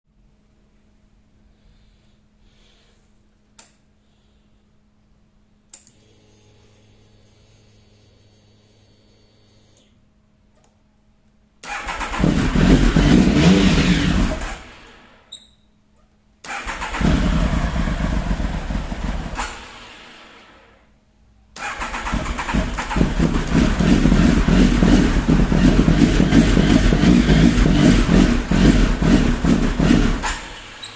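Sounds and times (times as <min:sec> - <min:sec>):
motorcycle engine starting: 0:11.6 - 0:15.1, 0:16.4 - 0:20.6, 0:21.6 - 0:30.9.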